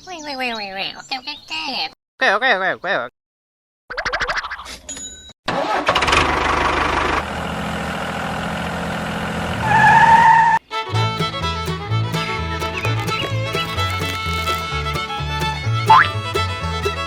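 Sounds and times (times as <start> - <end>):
vehicle engine running: 6.3 - 10.2, 10.9 - 17.0
music with a beat: 10.9 - 17.0.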